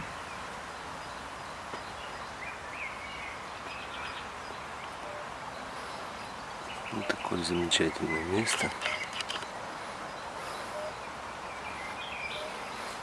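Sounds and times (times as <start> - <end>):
faint bird chirps: 0.0 - 13.0
outdoor background noise: 0.0 - 13.0.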